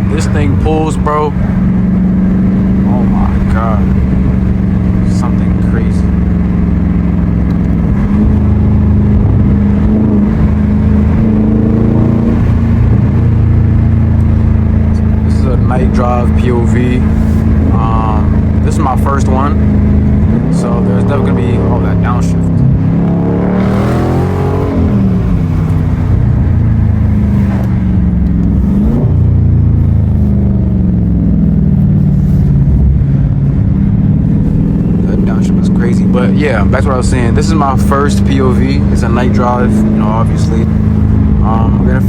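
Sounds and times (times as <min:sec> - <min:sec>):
loud car exhaust: 0:00.0 - 0:42.0.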